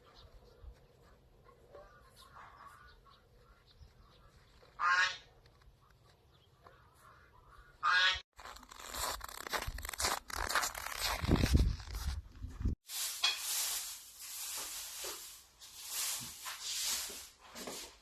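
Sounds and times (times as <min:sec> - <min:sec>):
farmyard fowl calling: 0:04.2 - 0:05.3, 0:07.0 - 0:08.2.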